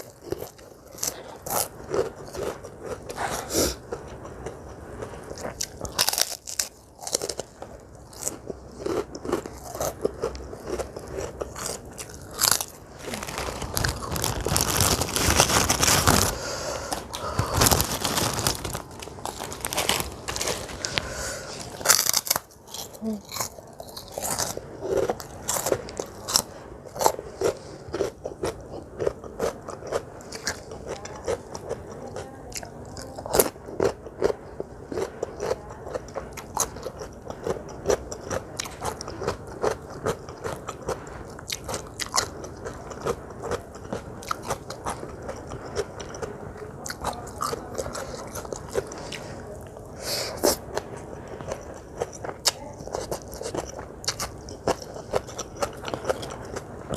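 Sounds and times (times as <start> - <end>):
chewing and crunching food: 0.0 - 56.9.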